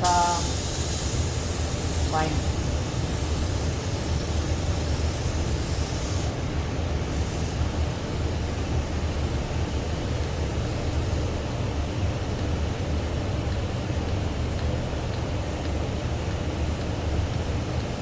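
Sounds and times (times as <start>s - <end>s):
spray gun hissing: 0.0s - 6.4s, 7.1s - 7.6s.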